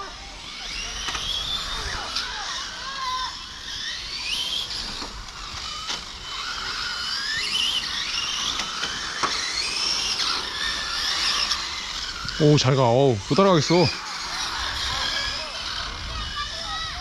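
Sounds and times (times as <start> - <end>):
rc car electric motors whining: 0.0 - 17.0.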